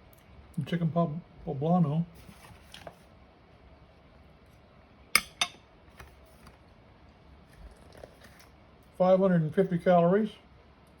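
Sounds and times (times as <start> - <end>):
cutlery clinking on a dish: 5.2 - 5.6.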